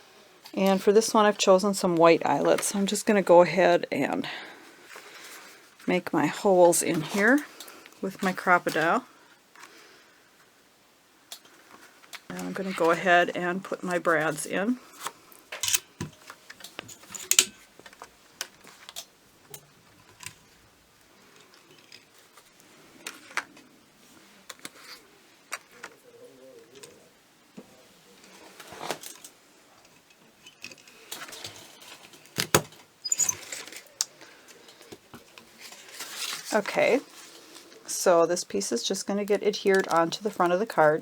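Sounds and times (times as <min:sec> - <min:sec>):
paper rustling: 0:33.3 - 0:37.8.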